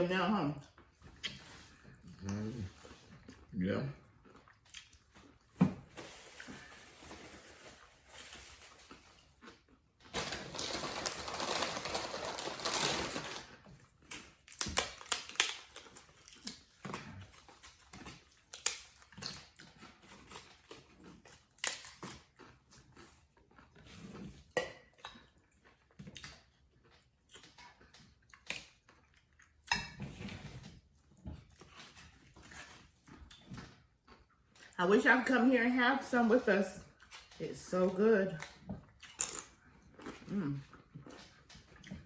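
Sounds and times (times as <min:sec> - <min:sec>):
crunching of chips being chewed: 0:00.6 - 0:35.1, 0:38.3 - 0:42.0.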